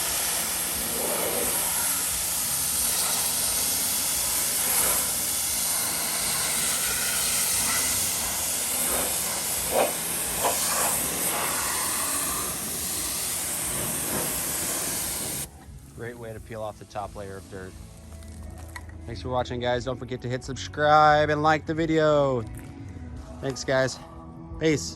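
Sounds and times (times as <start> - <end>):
pressure washer spraying water: 0.0 - 18.7.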